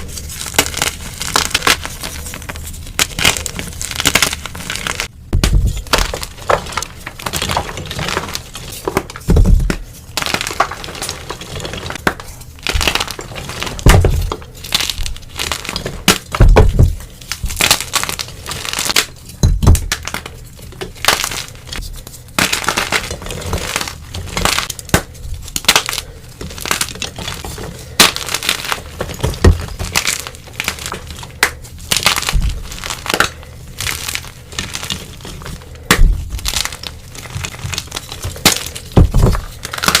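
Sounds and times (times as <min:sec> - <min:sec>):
chalk crunching: 0:00.0 - 0:05.1.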